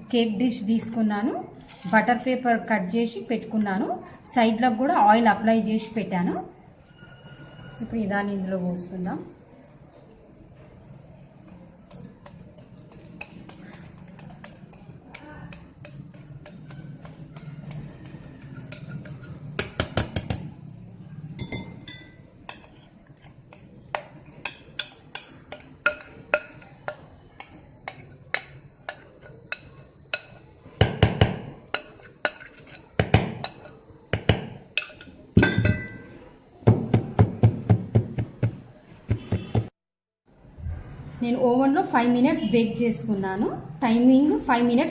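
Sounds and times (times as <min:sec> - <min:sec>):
utensils clicking against bowl: 0:11.5 - 0:20.5.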